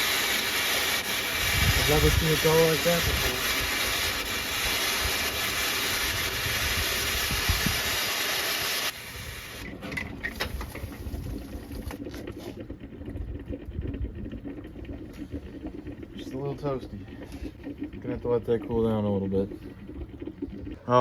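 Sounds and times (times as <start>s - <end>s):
steam hissing from cooling system: 0.0s - 11.4s.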